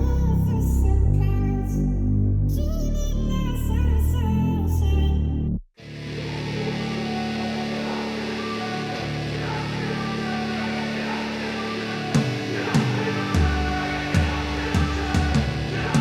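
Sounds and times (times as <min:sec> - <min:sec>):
deep bass: 0:00.0 - 0:05.7
drum beats: 0:12.2 - 0:16.0.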